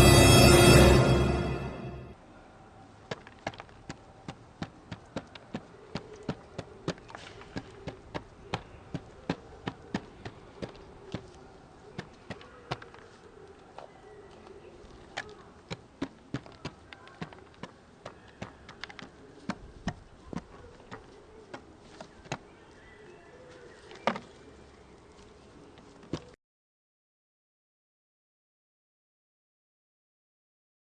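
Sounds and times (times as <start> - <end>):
pigeon beak tapping: 3.1 - 13.1, 15.1 - 22.5.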